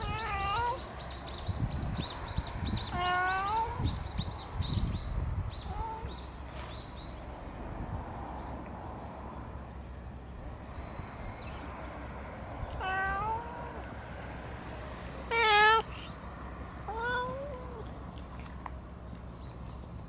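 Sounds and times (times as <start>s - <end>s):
cat meowing: 0.0s - 0.8s, 2.9s - 3.9s, 12.7s - 13.9s, 15.2s - 18.0s.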